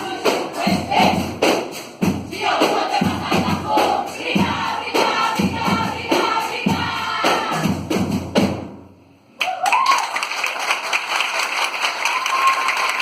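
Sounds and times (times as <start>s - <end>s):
music with drum beat: 0.0s - 8.9s
person cheering: 9.4s - 10.2s, 12.0s - 13.0s
audience applause: 9.4s - 13.0s.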